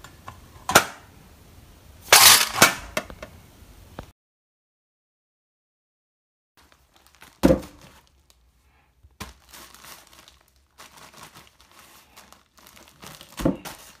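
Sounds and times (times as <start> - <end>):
packaging crinkling: 6.6 - 8.5, 9.1 - 14.0.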